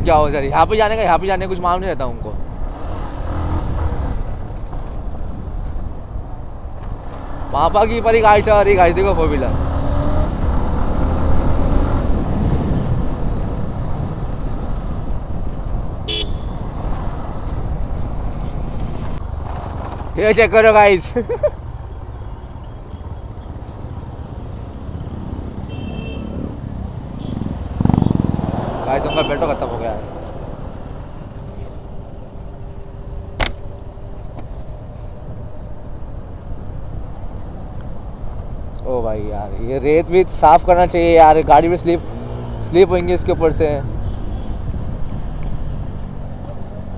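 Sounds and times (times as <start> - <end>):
motorcycle engine rumble: 0.0 - 46.9
wind noise: 9.6 - 20.2
motorcycle horn toot: 16.0 - 16.7, 25.5 - 29.6
sharp knock: 33.4 - 33.7.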